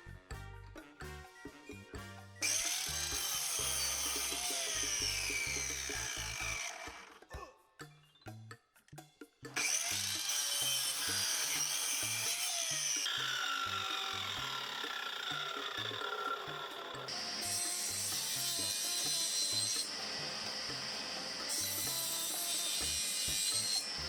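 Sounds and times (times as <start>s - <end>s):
background music with a beat: 0.0s - 9.6s
power tool cutting wood: 2.4s - 7.2s, 9.6s - 24.0s.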